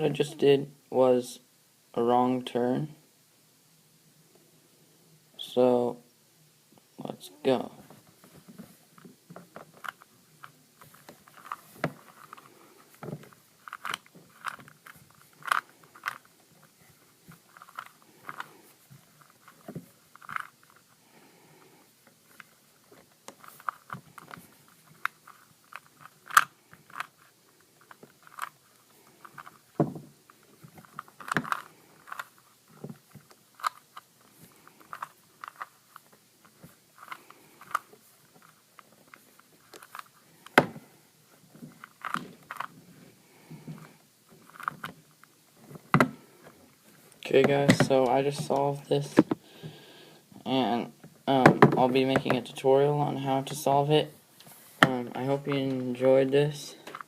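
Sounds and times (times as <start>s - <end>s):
puzzle cube layers clicking: 13.2s - 16.4s, 23.2s - 34.2s.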